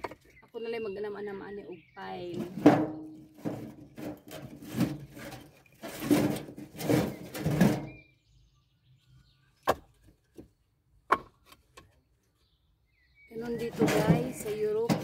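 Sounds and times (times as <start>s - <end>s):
firewood logs knocking together: 0.0s - 0.6s, 2.4s - 8.0s, 9.6s - 10.5s, 11.1s - 12.0s.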